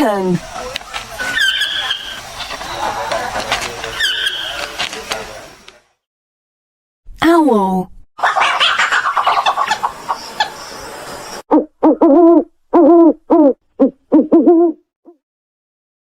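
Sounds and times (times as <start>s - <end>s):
rough hissing noise: 0.2s - 5.8s
owl hooting: 1.2s - 2.7s, 3.9s - 4.8s, 11.5s - 14.8s.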